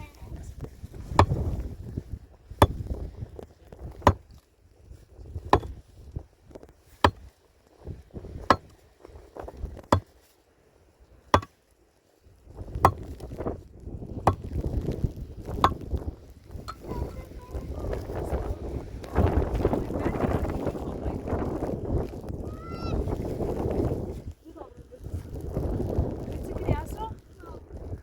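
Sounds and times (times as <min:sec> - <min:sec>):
steady rustling noise: 0:00.0 - 0:28.0
sharp chopping strikes: 0:01.2 - 0:01.5, 0:02.6 - 0:02.8, 0:12.8 - 0:13.2, 0:14.3 - 0:14.6.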